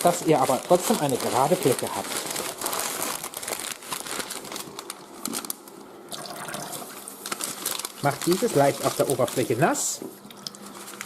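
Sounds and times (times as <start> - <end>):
newspaper crinkling: 0.0 - 5.9, 6.8 - 10.0, 10.6 - 11.0
water running: 6.1 - 7.2.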